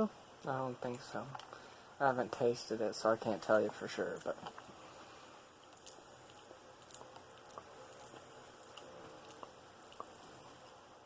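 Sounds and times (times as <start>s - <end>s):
person chewing cracker: 5.6s - 10.6s.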